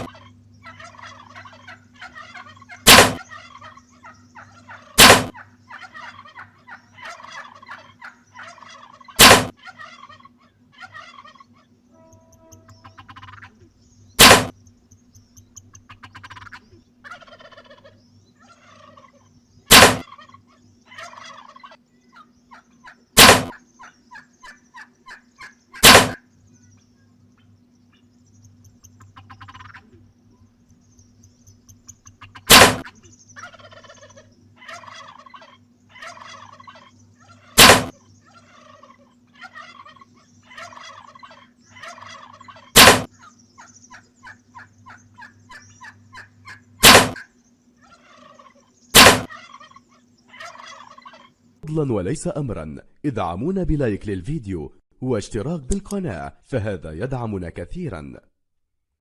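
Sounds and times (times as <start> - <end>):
wild turkeys gobbling: 0.0 - 14.6, 15.4 - 51.5
loud sharp cracks: 2.8 - 3.2, 5.0 - 5.4, 9.2 - 9.5, 14.2 - 14.6, 19.7 - 20.1, 23.2 - 23.6, 25.8 - 26.2, 32.5 - 32.9, 37.6 - 38.0, 42.8 - 43.1, 46.8 - 47.2, 49.0 - 49.3.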